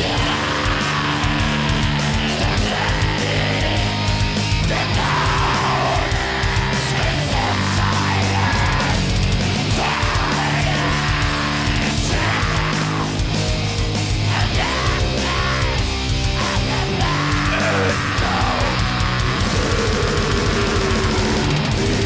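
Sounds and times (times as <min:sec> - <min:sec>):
bass guitar: 0:00.0 - 0:22.0
distorted electric guitars: 0:00.0 - 0:22.0
drums with cymbal wash: 0:00.0 - 0:22.0.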